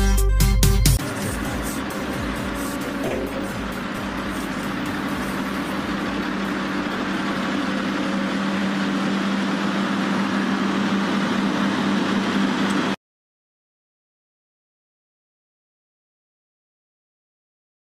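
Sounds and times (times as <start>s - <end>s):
diesel engine running: 0.8s - 13.0s.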